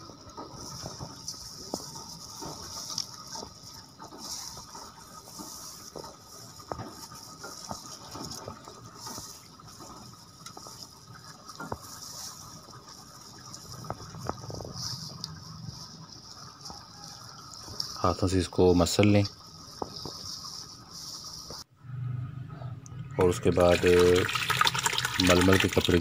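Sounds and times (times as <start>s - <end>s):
wet squelching and sloshing: 23.2s - 26.0s.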